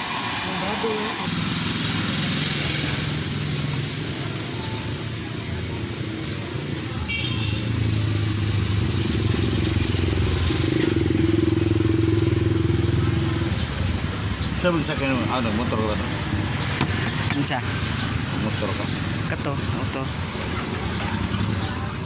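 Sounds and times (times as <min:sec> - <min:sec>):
vehicle engine running: 0:07.7 - 0:22.0.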